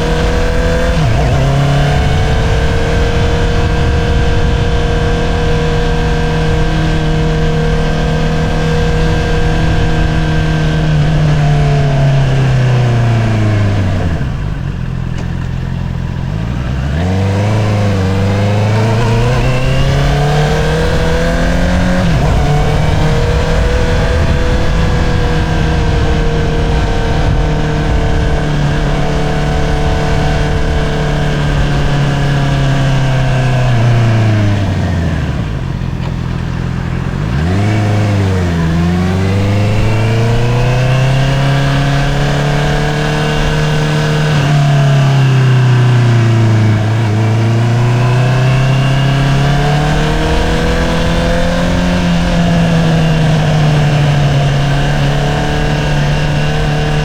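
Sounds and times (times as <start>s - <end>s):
motorcycle engine accelerating: 0.0s - 57.0s.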